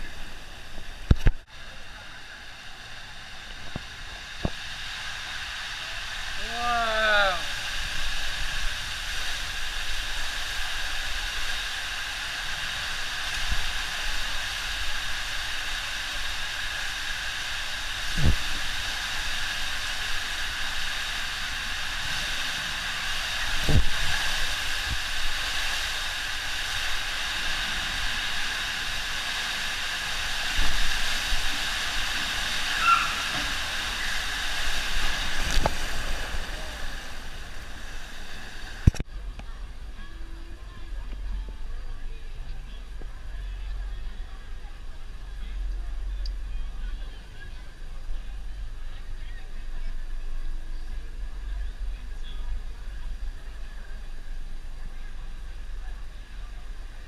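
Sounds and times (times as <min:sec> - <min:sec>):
water flowing and splashing: 0:00.0 - 0:39.1.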